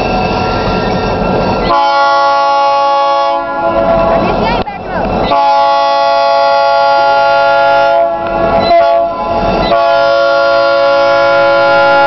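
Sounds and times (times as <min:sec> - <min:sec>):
locomotive air horn blast: 0:01.7 - 0:04.2, 0:05.3 - 0:12.0.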